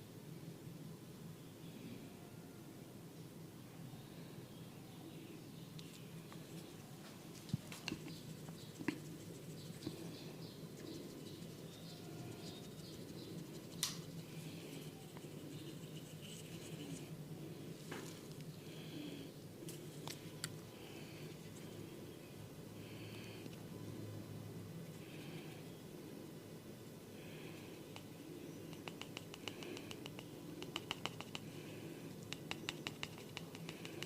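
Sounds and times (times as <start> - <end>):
steady low hum: 2.8 - 34.0
sharp clicks: 13.7 - 14.0, 28.7 - 31.5.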